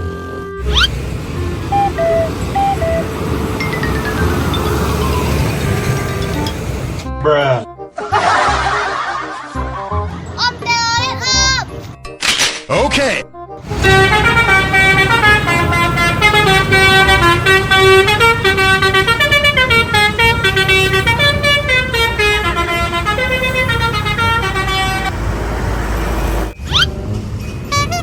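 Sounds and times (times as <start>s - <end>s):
musical air horns tune: 0.2s - 7.1s, 13.6s - 25.1s
low engine rumble: 0.5s - 7.1s, 13.6s - 28.0s
brief rising sweep: 0.6s - 7.1s.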